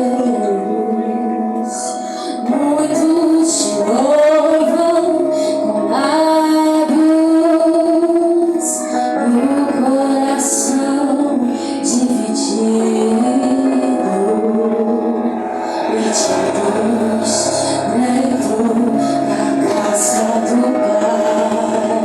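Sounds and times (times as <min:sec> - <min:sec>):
instrumental accompaniment: 0:00.0 - 0:22.0.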